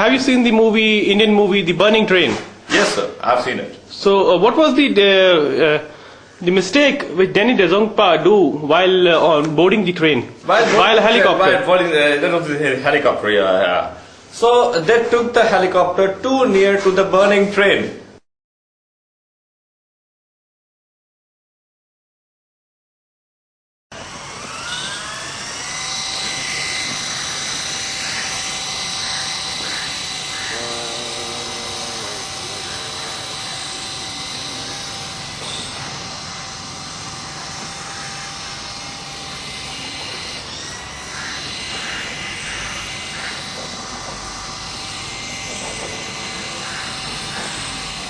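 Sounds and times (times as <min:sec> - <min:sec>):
toy helicopter motor whine: 0:23.9 - 0:48.0.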